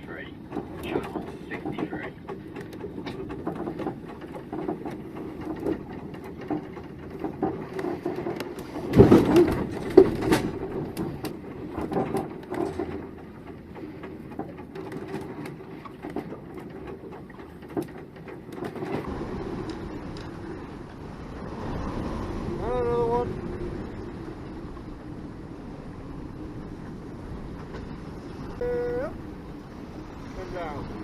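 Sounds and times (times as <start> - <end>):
boat clattering and knocking: 0.0 - 31.0
heavy thumps and banging: 0.5 - 19.1.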